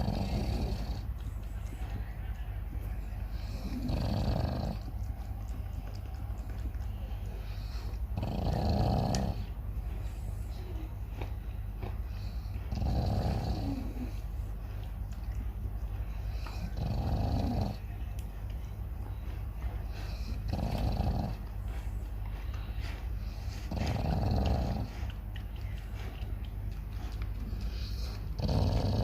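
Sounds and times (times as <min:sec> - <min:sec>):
dog snoring: 0:00.0 - 0:01.1, 0:03.3 - 0:04.9, 0:07.4 - 0:09.6, 0:12.1 - 0:14.4, 0:16.1 - 0:18.0, 0:19.8 - 0:21.9, 0:23.2 - 0:25.2, 0:27.5 - 0:29.0.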